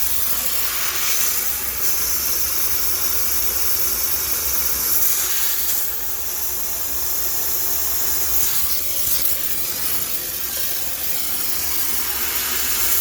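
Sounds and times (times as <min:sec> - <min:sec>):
steam cleaner hissing: 0:00.0 - 0:13.0.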